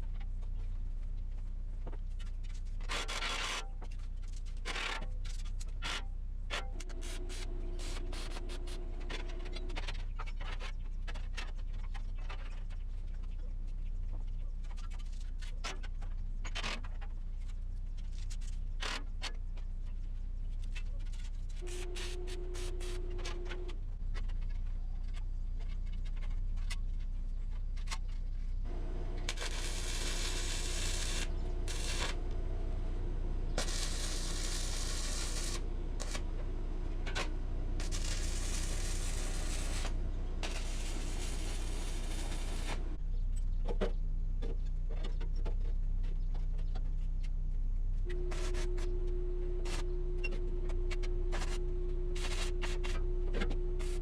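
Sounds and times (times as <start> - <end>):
steady low hum: 0.0 - 54.0
short steady whine: 21.6 - 24.0, 28.7 - 43.0, 48.0 - 54.0
rough dense noise: 28.7 - 43.0.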